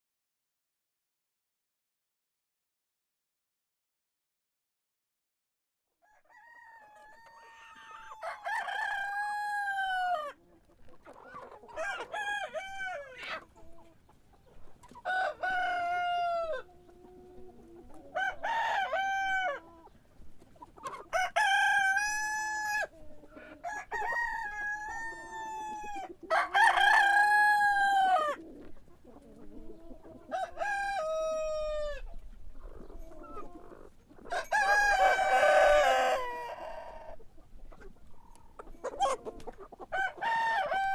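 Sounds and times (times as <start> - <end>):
roosters crowing: 6.0 - 10.4, 11.6 - 13.4, 15.0 - 16.7, 18.0 - 19.7, 21.0 - 28.4, 30.2 - 32.1, 33.4 - 37.2, 39.8 - 40.9
hens clucking softly: 6.1 - 40.9.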